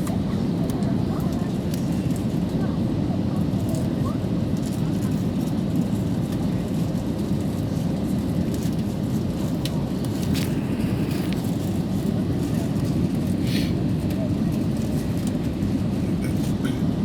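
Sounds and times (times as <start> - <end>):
airliner cabin rumble: 5.1 - 17.0.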